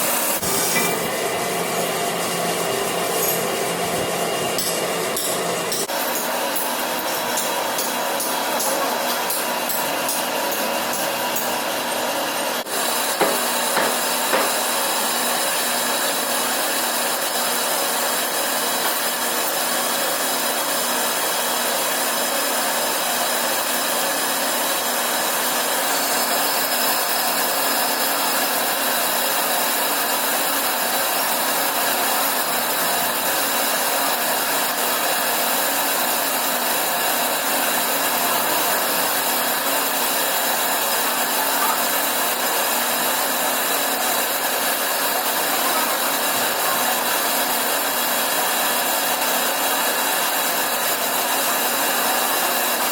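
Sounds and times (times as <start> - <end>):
lathe high whine: 0.0 - 7.7.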